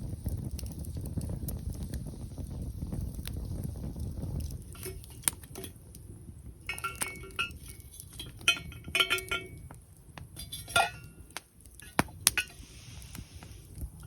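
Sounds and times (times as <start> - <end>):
metal cookware clinking: 4.8 - 5.8, 6.7 - 11.3.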